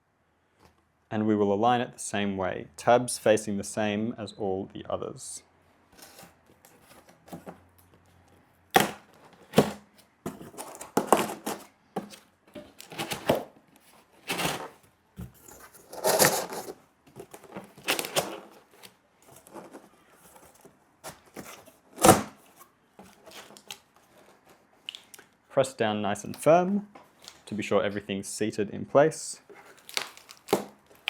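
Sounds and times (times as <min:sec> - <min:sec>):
cardboard scraping and rustling: 0:06.0 - 0:08.1, 0:08.8 - 0:24.7, 0:29.5 - 0:31.0.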